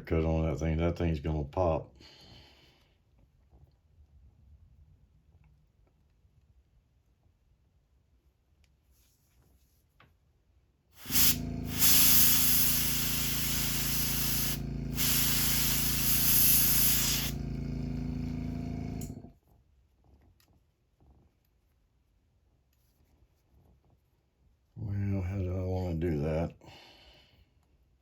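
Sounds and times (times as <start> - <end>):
airbrush spraying hiss: 11.0 - 19.2
air compressor humming: 11.0 - 19.3.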